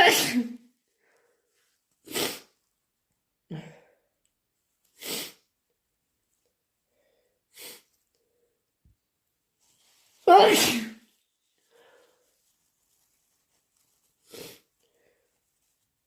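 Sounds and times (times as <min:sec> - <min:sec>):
person sneezing wetly: 0:00.0 - 0:00.6, 0:02.1 - 0:02.6, 0:05.0 - 0:05.5, 0:10.2 - 0:11.1.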